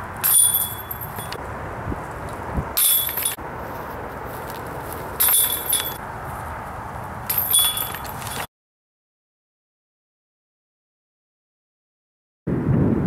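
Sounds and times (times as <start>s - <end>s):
metal chains jingling: 0.2s - 1.4s, 2.8s - 3.4s, 5.2s - 6.0s, 7.3s - 8.5s.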